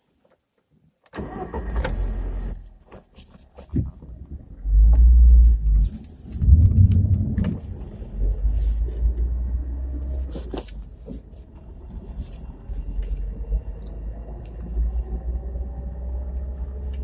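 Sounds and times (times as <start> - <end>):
car cabin rumble: 3.7 - 12.2.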